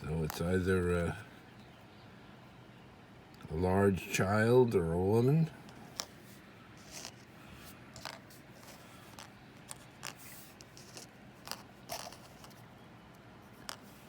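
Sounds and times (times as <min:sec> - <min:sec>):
packaging rustling: 0:08.0 - 0:12.6.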